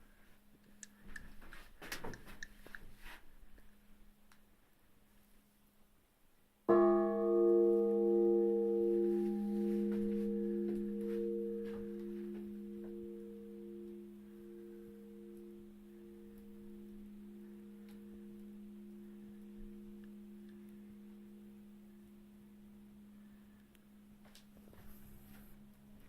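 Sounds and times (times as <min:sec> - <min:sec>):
struck bell ringing: 0:06.7 - 0:15.4.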